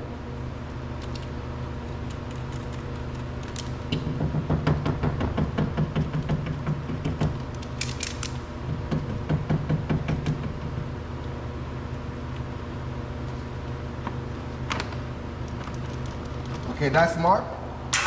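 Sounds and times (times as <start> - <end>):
steady low hum: 0.0 - 18.0
hands clicking wiring connectors: 5.4 - 10.5.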